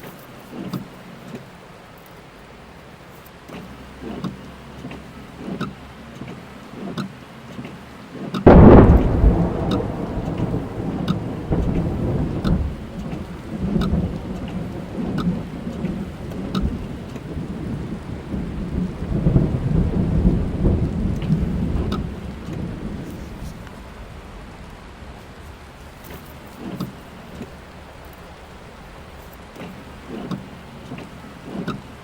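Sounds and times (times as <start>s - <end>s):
rain pattering on car: 0.0s - 32.0s
thunder clap and rumbling: 8.4s - 25.2s.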